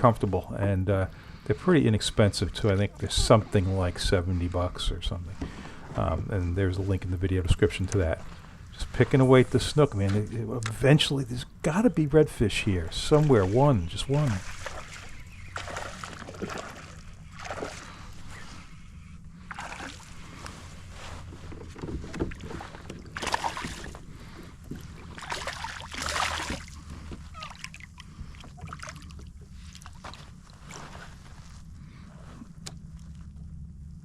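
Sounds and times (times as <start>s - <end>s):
water sloshing around a kayak: 0.0s - 33.6s
splashy paddle swishes: 13.0s - 18.0s.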